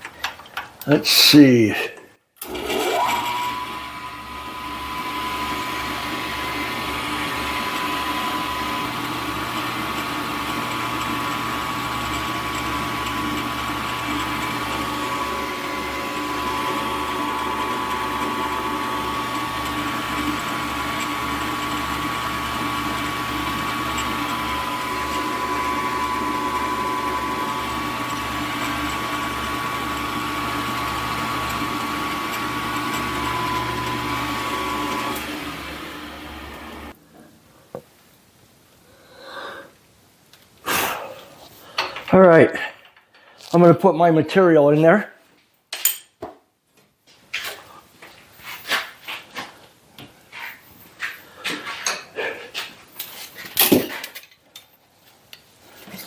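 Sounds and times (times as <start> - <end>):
milling machine running with whine: 2.4 - 37.0.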